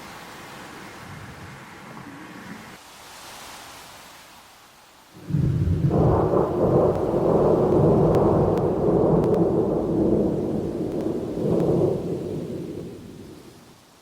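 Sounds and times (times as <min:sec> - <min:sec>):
rolling thunder rumble: 0:05.2 - 0:13.8.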